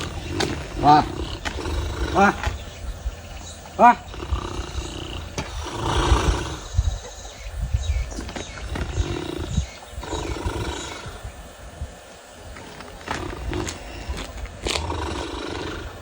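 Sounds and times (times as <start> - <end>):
person snoring loudly: 4.1 - 6.8, 13.1 - 16.0.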